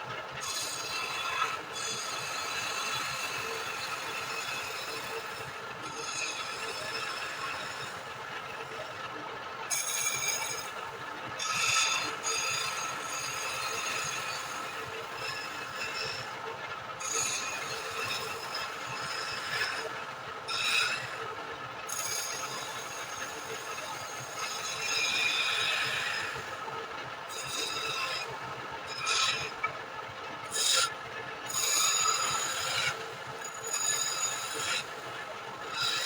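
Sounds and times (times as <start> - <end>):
wood lathe whining: 0.1 - 36.0
turning tool scraping wood: 17.0 - 21.2, 21.9 - 26.6, 27.3 - 29.8, 30.4 - 36.0.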